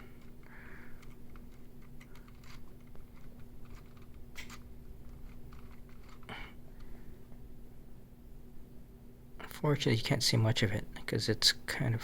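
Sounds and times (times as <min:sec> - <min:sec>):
plastic clicks and rattles: 0:00.2 - 0:06.3.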